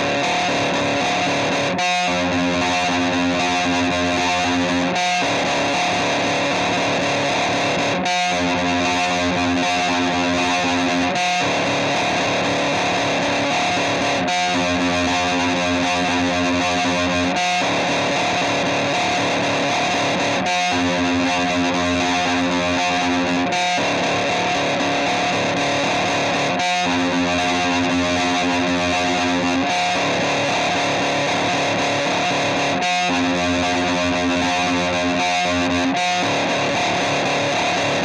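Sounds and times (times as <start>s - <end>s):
distorted guitar drone: 0.0s - 38.0s.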